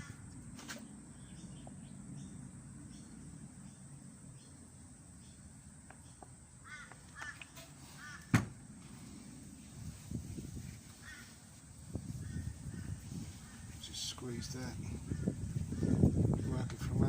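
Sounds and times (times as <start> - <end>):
crow calling: 6.6 - 8.4, 11.0 - 11.4, 12.2 - 13.7, 14.9 - 16.7.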